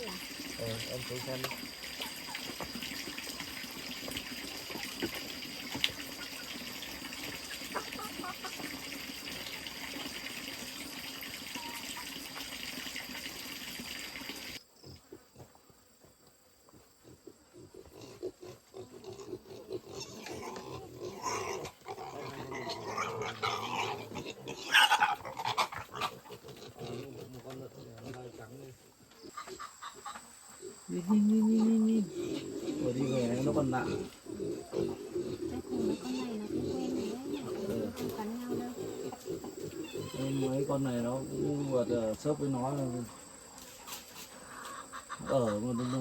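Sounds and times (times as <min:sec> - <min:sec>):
piglets grunting and squealing: 0:07.5 - 0:08.7, 0:17.0 - 0:28.5, 0:29.3 - 0:42.2, 0:44.4 - 0:46.0.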